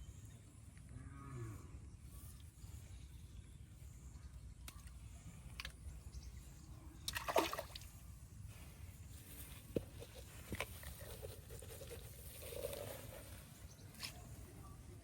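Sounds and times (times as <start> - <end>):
water splashing and sloshing: 7.0 - 8.2.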